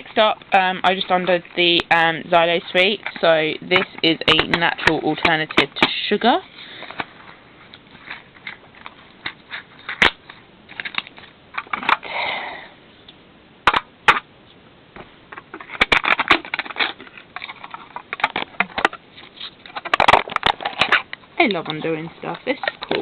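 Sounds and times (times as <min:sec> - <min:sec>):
packaging crinkling and rustling: 0:06.7 - 0:12.0, 0:15.3 - 0:23.0.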